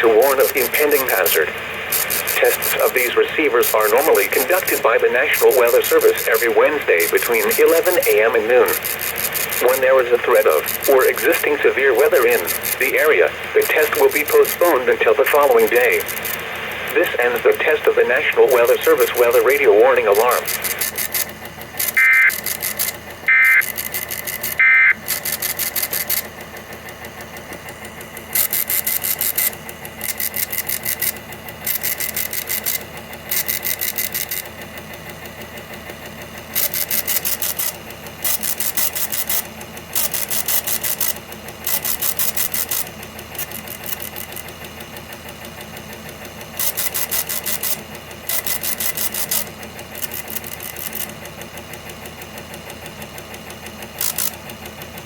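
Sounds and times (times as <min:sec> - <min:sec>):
bursts of hissy static: 0:00.0 - 0:26.1
digital data tones: 0:00.0 - 0:26.3, 0:28.4 - 0:34.4, 0:36.6 - 0:39.4, 0:46.6 - 0:51.1.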